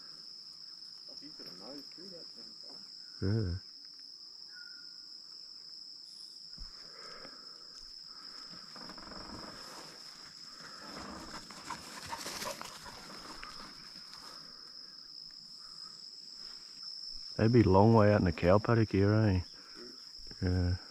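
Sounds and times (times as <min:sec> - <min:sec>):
cricket trill: 0:00.0 - 0:20.9
cattle lowing: 0:10.6 - 0:13.9.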